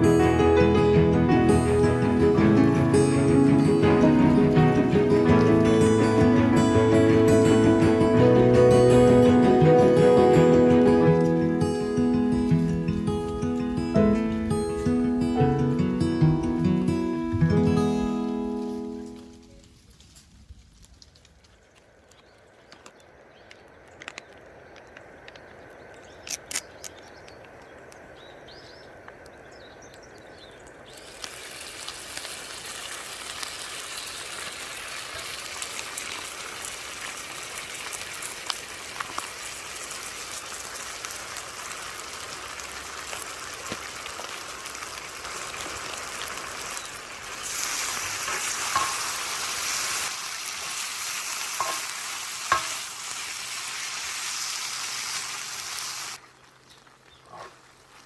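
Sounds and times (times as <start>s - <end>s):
food sizzling in a pan: 30.9s - 56.2s.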